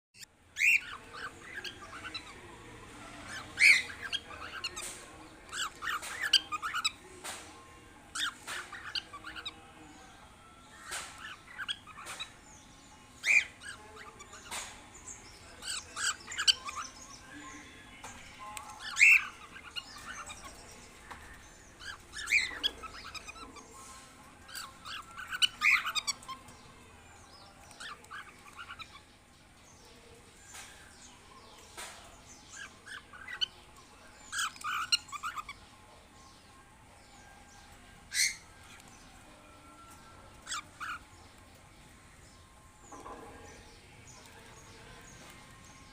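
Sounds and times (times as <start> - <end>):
cockatiels chirping: 0.6 - 2.5, 3.2 - 7.0, 8.1 - 9.7, 10.7 - 12.4, 13.2 - 14.8, 15.4 - 17.2, 18.6 - 26.6, 27.4 - 29.1, 32.5 - 33.6, 34.3 - 35.6, 38.1 - 38.9, 39.6 - 41.1.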